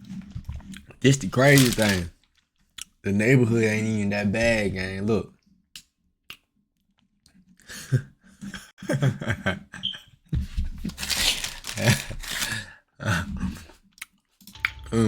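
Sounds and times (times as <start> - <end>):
distorted unintelligible voices: 1.0 - 2.1.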